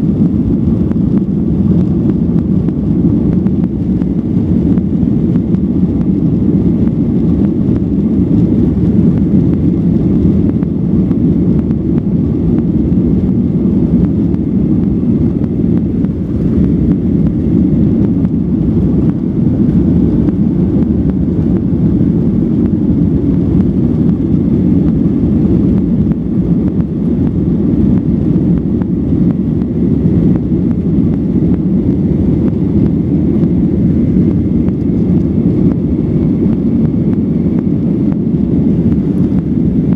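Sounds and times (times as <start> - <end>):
airliner cabin engine drone: 0.0 - 39.9.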